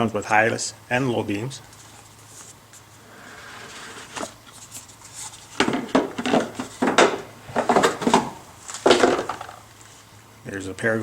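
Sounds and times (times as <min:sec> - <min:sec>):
packaging rustling and clacking: 0:03.9 - 0:09.6.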